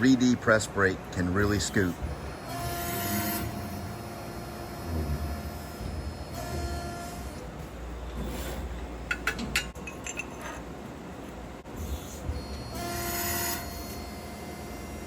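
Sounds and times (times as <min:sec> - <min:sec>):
motor whine: 0:01.4 - 0:09.1, 0:11.8 - 0:15.0.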